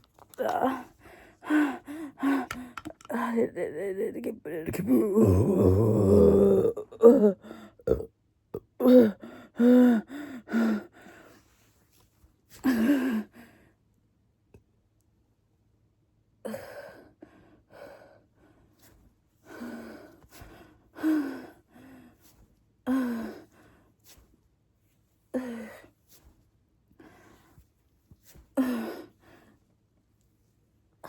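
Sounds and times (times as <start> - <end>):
woman burping: 4.8 - 8.9.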